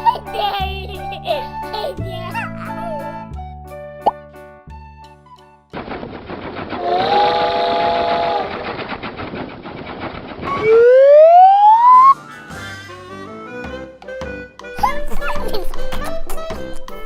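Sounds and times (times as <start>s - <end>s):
light music: 0.0s - 5.8s, 11.8s - 17.0s
fast rattling clatter: 5.8s - 7.4s, 8.3s - 10.7s
rising slide-whistle tone: 10.5s - 12.2s.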